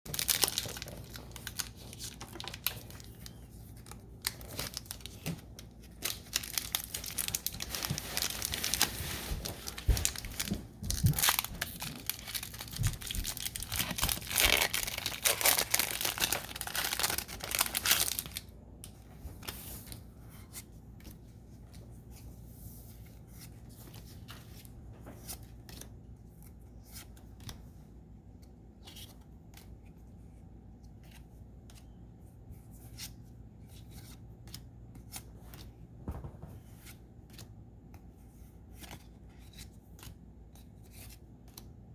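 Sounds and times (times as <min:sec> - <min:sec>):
foil wrapper tearing and crinkling: 0:00.1 - 0:03.3, 0:06.0 - 0:08.9, 0:09.5 - 0:18.4
cards clicking and rustling: 0:00.1 - 0:08.8, 0:09.6 - 0:21.9.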